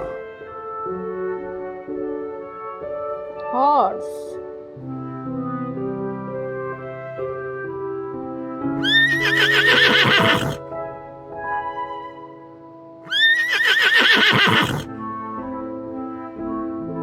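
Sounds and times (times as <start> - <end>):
light background music: 0.0 - 17.0
horse neighing: 8.8 - 10.6, 13.1 - 14.9.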